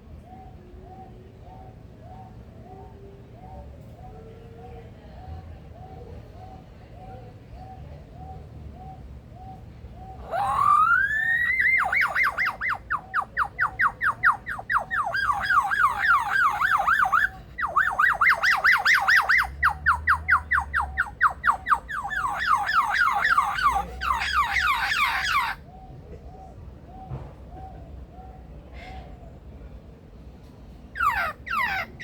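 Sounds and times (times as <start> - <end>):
lyrebird mimicking car alarm: 10.1 - 25.6, 31.0 - 32.0.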